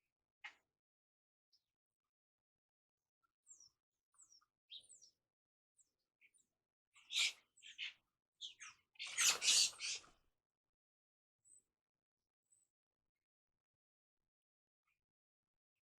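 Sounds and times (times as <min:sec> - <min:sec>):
birds chirping and calling: 0:07.0 - 0:10.2.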